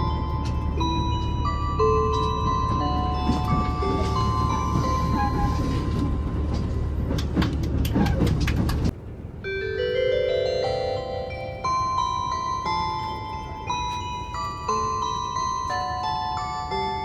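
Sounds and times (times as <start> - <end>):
rail clatter: 0.0 - 17.0
train running rumble: 0.0 - 17.0
electronic chime notes: 9.5 - 17.0.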